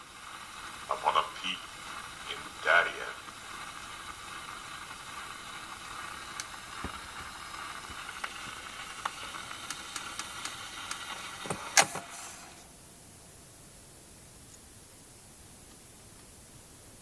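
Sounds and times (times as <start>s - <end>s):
background hiss: 0.0s - 17.0s
small clicks: 3.3s - 12.0s.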